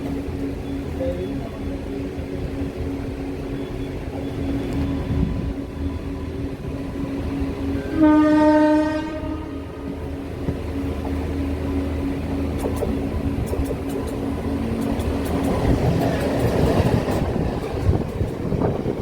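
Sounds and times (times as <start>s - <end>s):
moving train running noise: 0.0s - 19.0s
locomotive horn blast: 7.8s - 9.8s.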